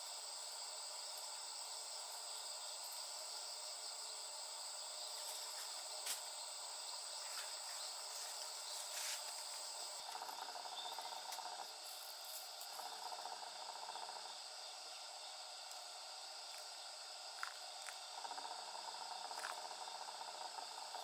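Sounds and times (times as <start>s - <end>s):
insects chirring: 0.0s - 21.0s
low pulsing insect call: 0.0s - 21.0s.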